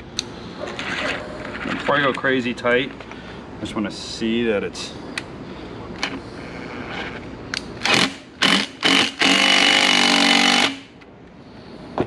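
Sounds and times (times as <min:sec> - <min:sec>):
small electric power tool running: 0:07.9 - 0:10.8.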